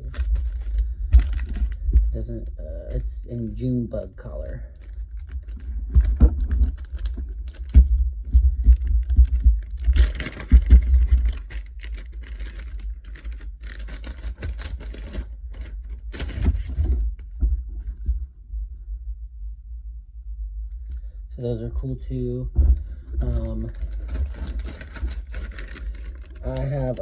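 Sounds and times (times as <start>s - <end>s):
plastic packaging rustling: 0.0s - 17.4s, 22.6s - 27.0s.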